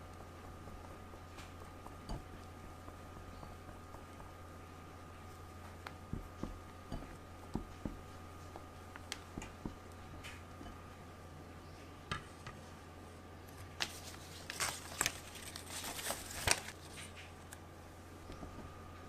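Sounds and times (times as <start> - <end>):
utensils scraping and tapping bowl: 0.0 - 10.9
faint steady hum: 0.0 - 19.0.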